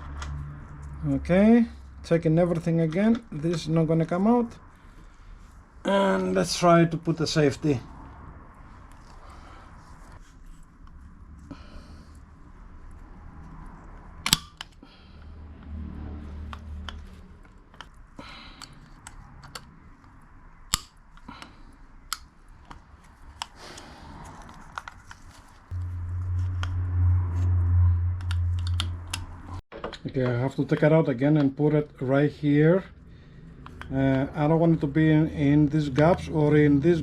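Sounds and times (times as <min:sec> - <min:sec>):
metal clip snapping: 0:14.2 - 0:14.8, 0:20.7 - 0:21.0
small metal clicks and taps: 0:18.6 - 0:21.5, 0:28.2 - 0:29.3
low steady rumble: 0:23.9 - 0:29.6.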